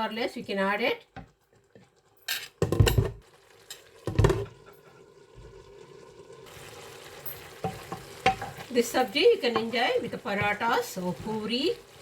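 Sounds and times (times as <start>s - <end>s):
faint sizzle of curry cooking: 0.0s - 12.0s
utensil scraping cooking pan: 6.5s - 12.0s.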